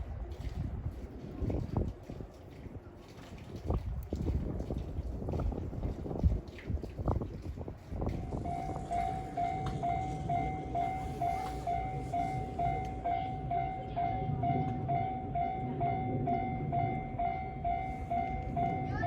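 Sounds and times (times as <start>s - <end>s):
steady low rumble: 3.6s - 19.0s
level-crossing warning bell: 8.2s - 19.0s.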